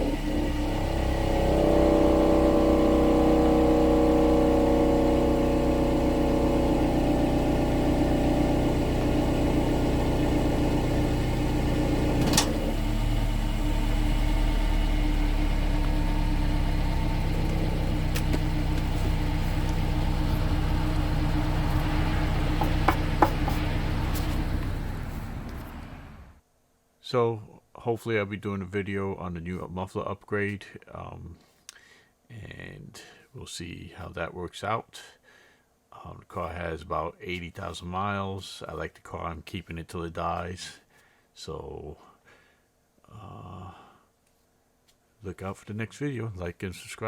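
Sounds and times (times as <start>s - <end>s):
car exhaust idling: 0.0s - 26.4s
metallic rattle in muffler: 0.0s - 26.4s.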